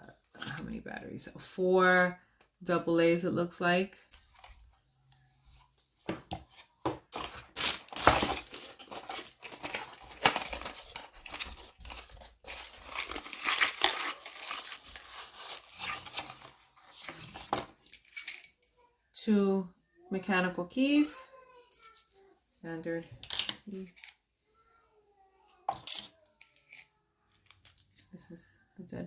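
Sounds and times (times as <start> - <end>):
packaging rustling and tearing: 7.1 - 17.5.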